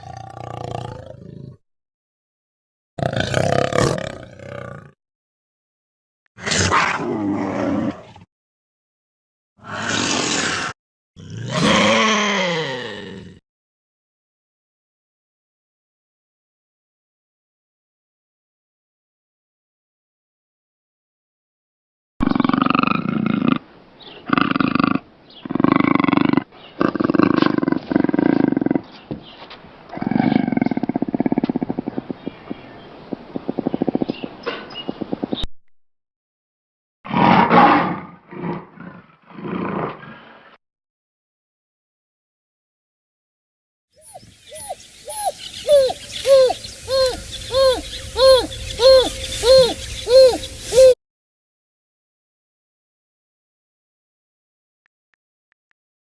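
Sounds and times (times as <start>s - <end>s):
large wild animal roaring: 0.0s - 1.6s, 3.0s - 5.0s, 6.4s - 8.2s, 9.6s - 13.4s, 22.2s - 23.6s, 24.2s - 28.8s, 37.1s - 40.4s
animal hooting: 44.0s - 51.0s.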